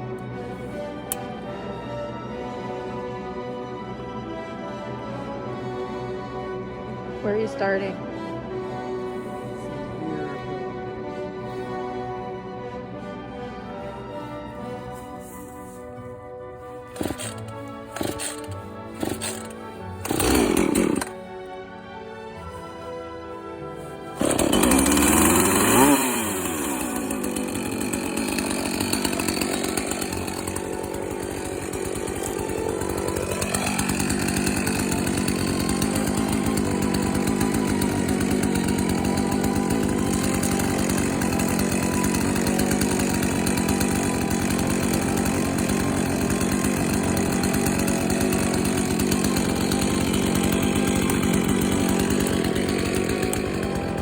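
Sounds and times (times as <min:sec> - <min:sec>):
chainsaw revving: 0:16.9 - 0:21.4, 0:24.2 - 0:54.0.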